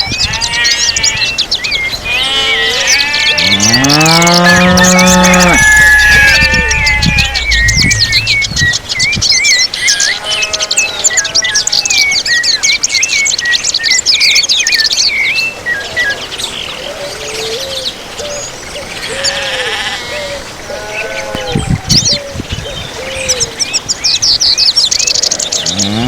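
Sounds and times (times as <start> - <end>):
small birds chirping: 0.0 - 20.0, 20.7 - 26.0
low rumble: 4.6 - 9.2.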